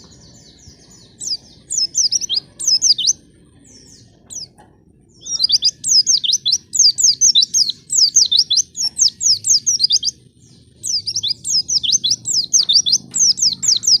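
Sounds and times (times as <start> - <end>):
bird chirping song: 0.0 - 14.0.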